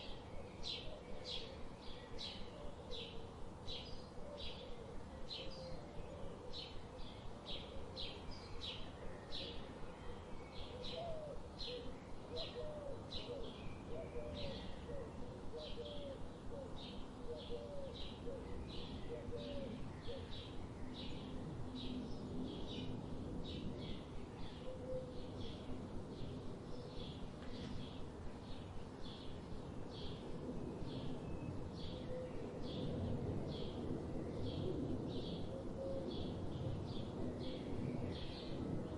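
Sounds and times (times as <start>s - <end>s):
outdoor background hiss: 0.0s - 38.9s.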